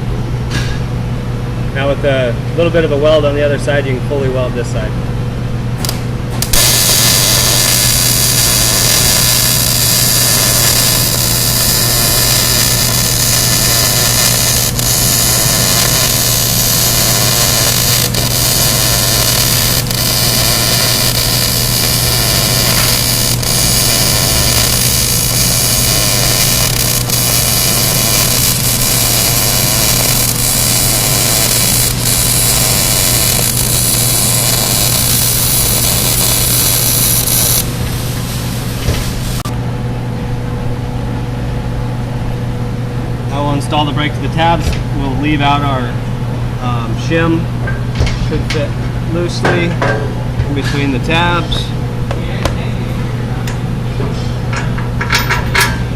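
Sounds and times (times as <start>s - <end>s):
constant low hum: 0.0s - 55.9s
arc welding crackling: 5.8s - 39.5s.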